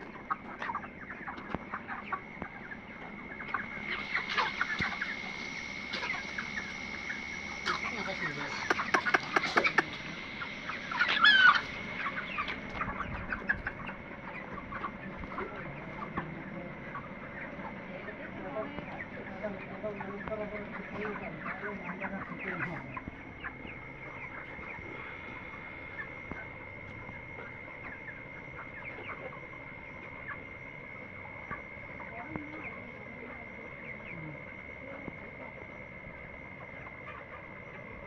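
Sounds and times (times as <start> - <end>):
chicken squawk: 0.0 - 26.5
chickens clucking and chirping: 0.0 - 38.0
steady high-pitched tone: 0.1 - 28.9.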